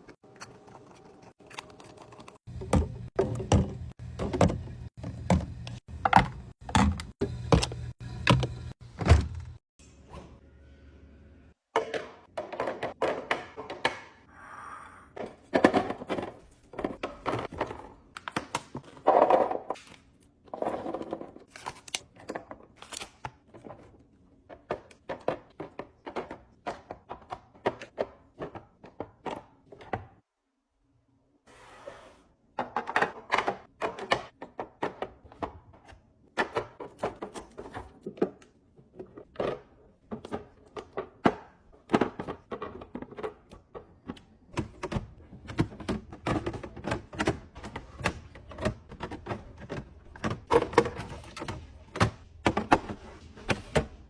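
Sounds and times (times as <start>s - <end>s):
plastic containers clacking: 32.6s - 54.0s.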